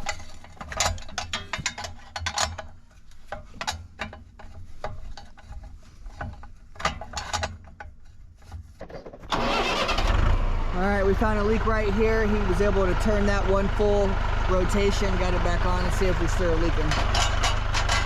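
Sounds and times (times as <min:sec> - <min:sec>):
tractor engine running: 0:09.1 - 0:18.0.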